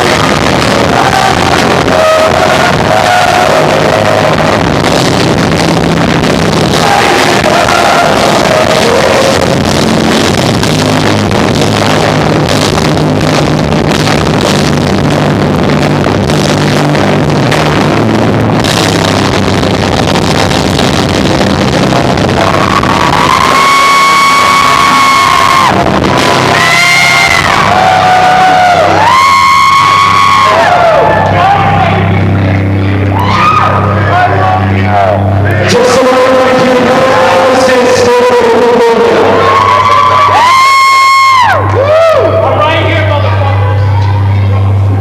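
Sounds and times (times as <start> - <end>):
sung vocals: 0.0 - 13.1, 30.2 - 40.4.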